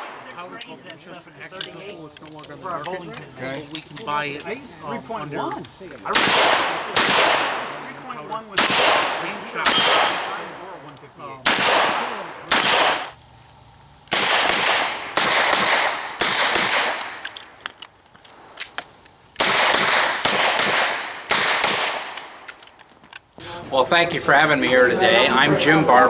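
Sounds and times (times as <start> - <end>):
revolver shots echoing: 6.0 - 10.8, 11.4 - 13.2, 14.1 - 17.2
small ticks: 13.0 - 14.2.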